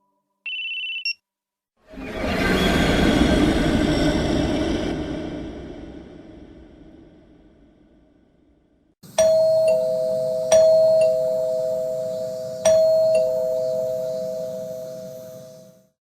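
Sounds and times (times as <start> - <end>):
two-tone doorbell chime: 9.1 - 16.0.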